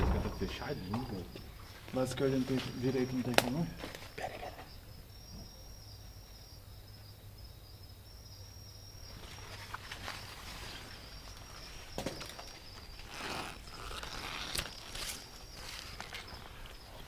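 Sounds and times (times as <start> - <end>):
insects trilling: 0.0 - 17.0
footsteps through dry brush: 9.1 - 17.0.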